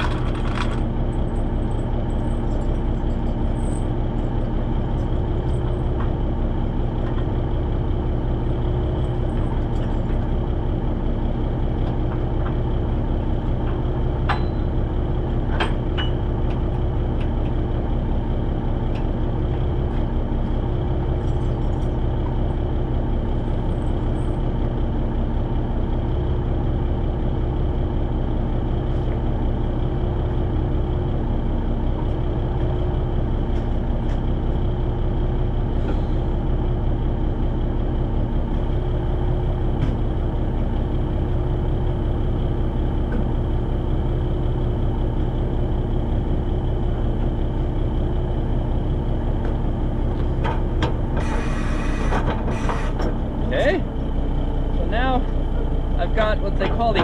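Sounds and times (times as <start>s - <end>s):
truck diesel engine idling: 0.0s - 57.0s.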